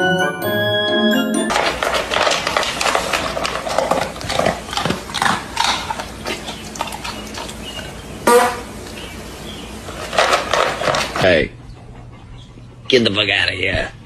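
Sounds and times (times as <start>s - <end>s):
animal noises: 1.8s - 13.3s.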